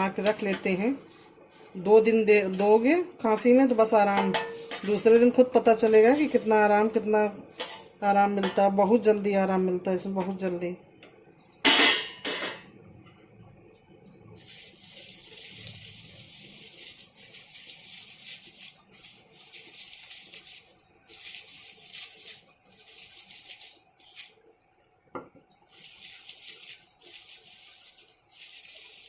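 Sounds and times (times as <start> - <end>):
leaves rasping through a sieve: 6.0 - 6.9, 14.4 - 24.5, 25.6 - 29.0.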